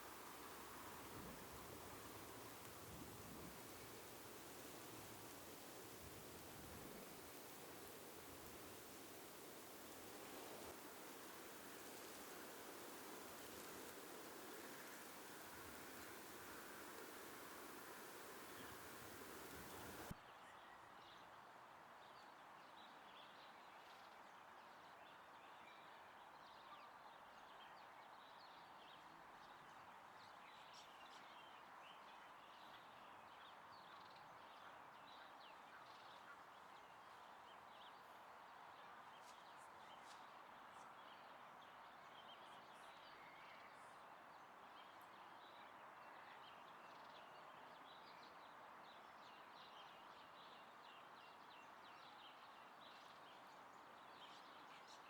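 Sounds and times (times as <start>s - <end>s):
soft rushing hiss: 0.0s - 20.2s.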